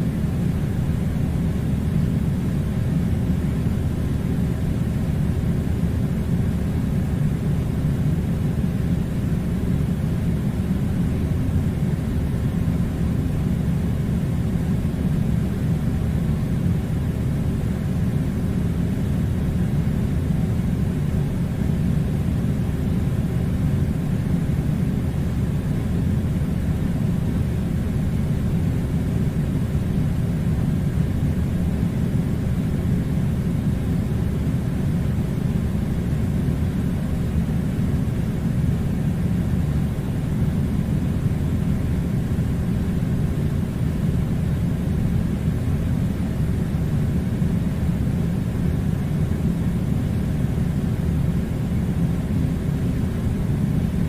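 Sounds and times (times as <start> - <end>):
air conditioner drone: 0.0 - 54.0.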